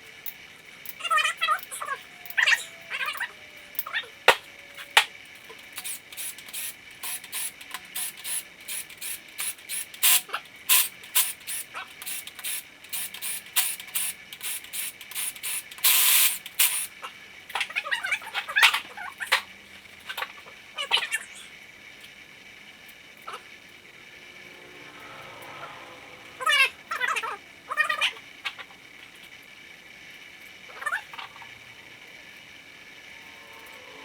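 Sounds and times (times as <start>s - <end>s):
socket ratchet clicking: 0.3s - 16.9s.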